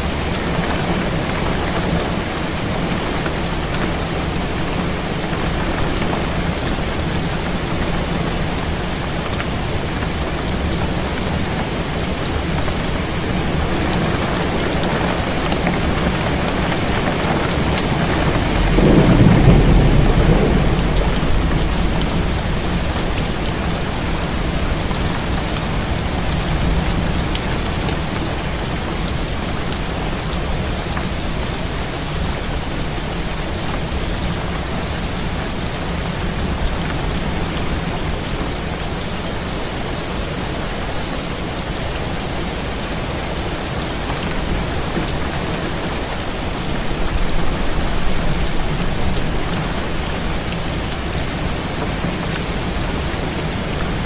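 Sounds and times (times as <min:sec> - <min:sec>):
heavy rain on a window: 0:00.0 - 0:54.0
low thunder roll: 0:16.5 - 0:26.3.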